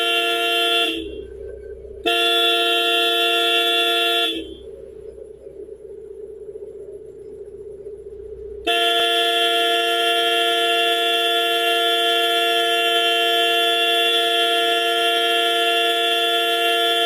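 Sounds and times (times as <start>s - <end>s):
car horn blast: 0.0s - 1.4s, 2.0s - 4.7s, 8.6s - 17.0s
quiet steady hum: 0.0s - 16.8s.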